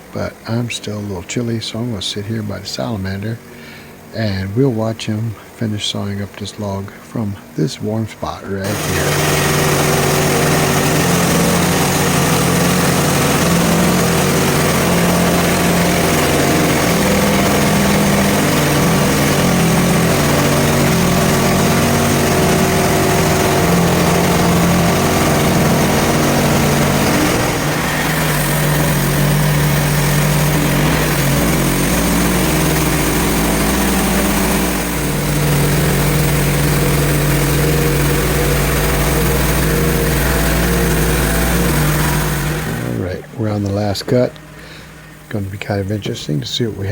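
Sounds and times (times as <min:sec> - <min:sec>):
sawmill engine running: 0:00.0 - 0:46.9
bandsaw cutting log: 0:08.6 - 0:44.8.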